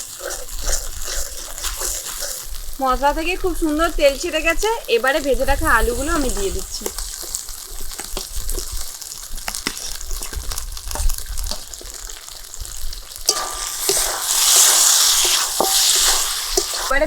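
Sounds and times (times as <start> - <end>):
spatula scraping and tapping pan: 0.0 - 2.7, 9.4 - 12.2, 13.2 - 17.0
frying sizzle: 0.0 - 17.0.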